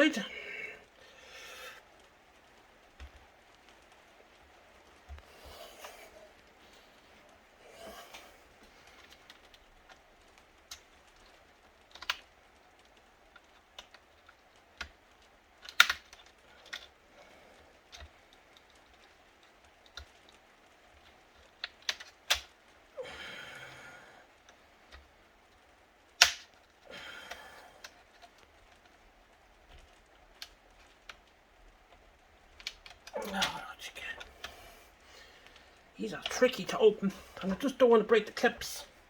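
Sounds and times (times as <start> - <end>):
plastic clips clicking and snapping: 8.9 - 17.0, 17.8 - 22.7, 24.4 - 29.0.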